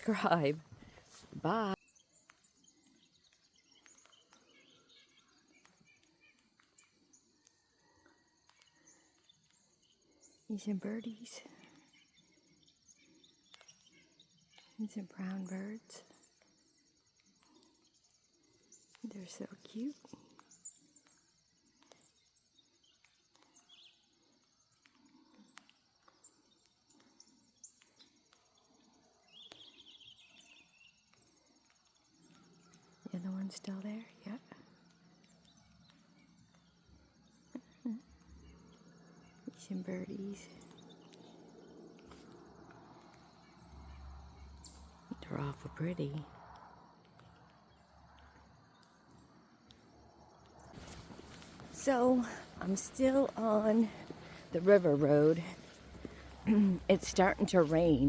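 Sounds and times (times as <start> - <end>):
small birds chirping: 0.0 - 58.0
faint clicks: 2.2 - 9.7, 22.9 - 33.0
high insect trill: 11.9 - 58.0.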